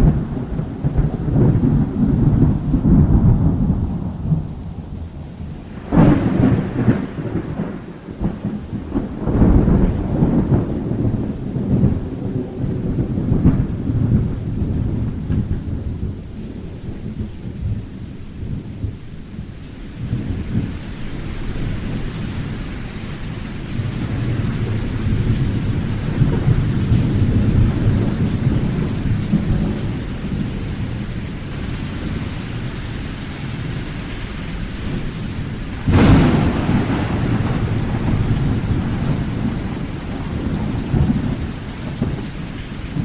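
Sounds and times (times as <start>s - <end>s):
low rolling thunder: 0.0s - 22.8s, 23.6s - 43.0s
steady rain hissing: 0.0s - 43.0s
sharp loud thunderclap: 5.7s - 16.2s, 35.8s - 43.0s.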